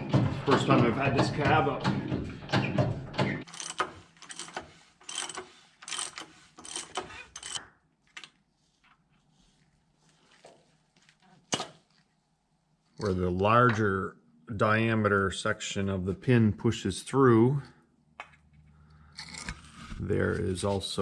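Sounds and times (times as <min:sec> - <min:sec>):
metal tools clicking and clinking: 0:03.4 - 0:07.7.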